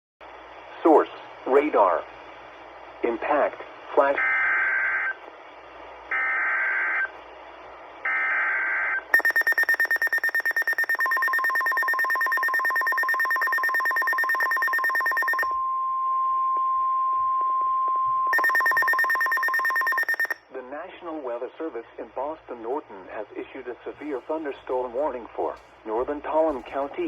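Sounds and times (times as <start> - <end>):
rapid pulsing alarm beep: 9.2 - 15.6, 18.3 - 20.4
steady warning alarm tone: 9.2 - 15.7, 18.3 - 20.4.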